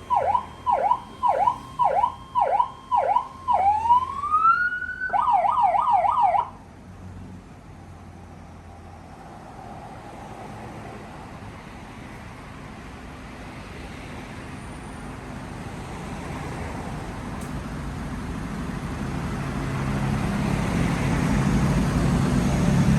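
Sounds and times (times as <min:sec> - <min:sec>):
road noise: 0:00.0 - 0:22.9
vehicle engine: 0:07.0 - 0:22.9.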